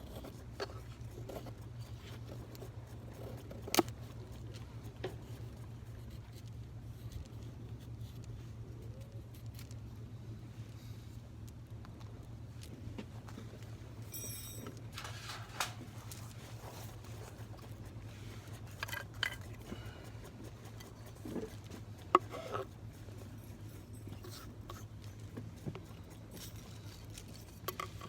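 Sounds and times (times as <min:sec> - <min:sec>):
brief metallic ring: 0:14.1 - 0:15.7
camp gear knocking and clicking: 0:14.1 - 0:16.0.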